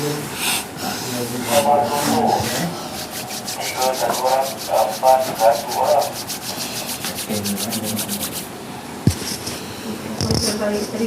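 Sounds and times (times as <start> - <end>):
rapid rhythmic rubbing: 0.4 - 8.6.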